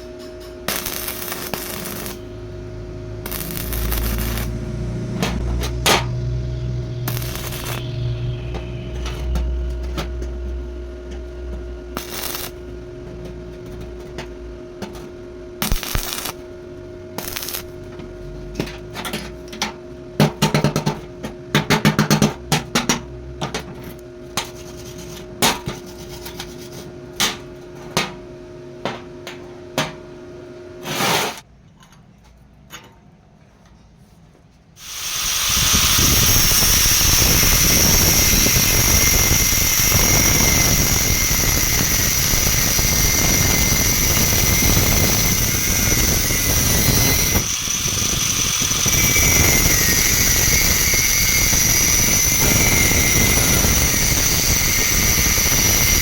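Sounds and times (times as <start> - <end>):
power tool high-pitched whine: 0.0 - 13.1, 15.6 - 16.4, 17.1 - 17.8, 34.8 - 56.0.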